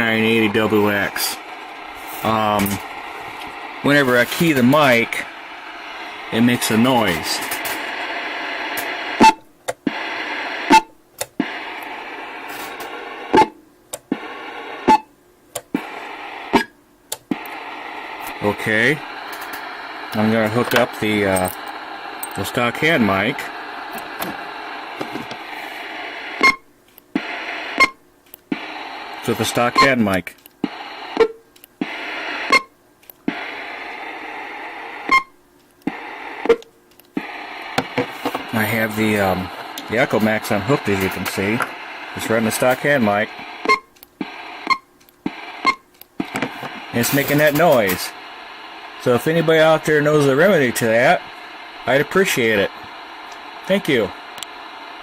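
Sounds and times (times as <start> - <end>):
radio static hiss: 0.0 - 55.0
radio sharp pop: 13.3 - 14.2, 35.9 - 38.5, 46.2 - 48.0
radio click on release: 43.4 - 48.0
radio pop on keying: 46.1 - 48.0.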